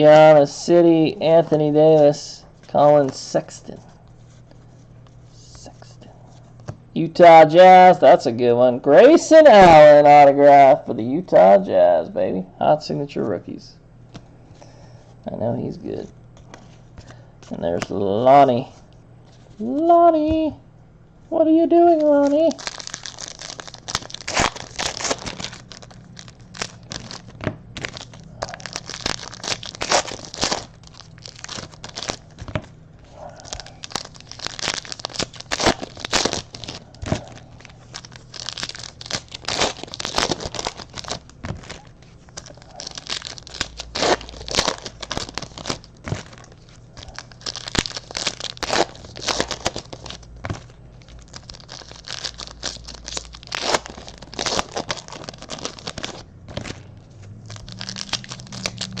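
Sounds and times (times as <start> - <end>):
wrappers being torn and crinkled: 21.9 - 59.0.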